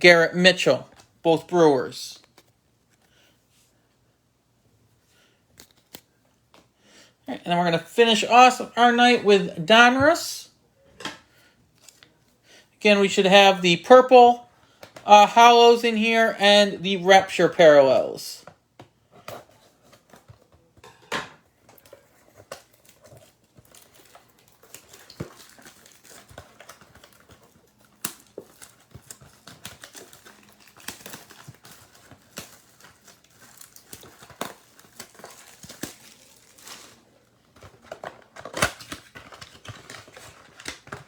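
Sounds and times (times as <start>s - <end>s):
cardboard and wrappers crinkling: 5.5s - 6.6s, 14.1s - 41.0s.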